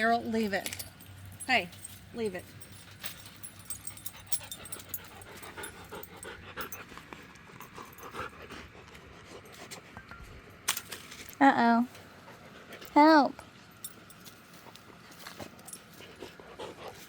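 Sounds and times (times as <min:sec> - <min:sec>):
light clicks and rattles: 0:00.0 - 0:08.1
dog panting: 0:02.6 - 0:10.0, 0:12.0 - 0:13.0, 0:14.6 - 0:17.0.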